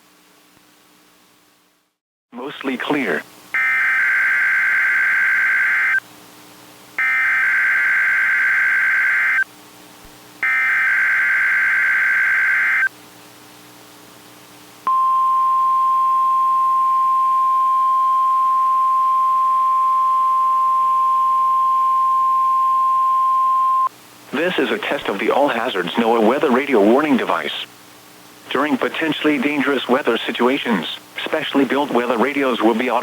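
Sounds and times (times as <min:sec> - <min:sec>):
harsh buzzing data tones: 0:02.6 - 0:06.0, 0:07.0 - 0:09.5, 0:10.4 - 0:12.9
steady warning alarm tone: 0:03.6 - 0:06.0, 0:07.0 - 0:09.4, 0:10.4 - 0:12.9.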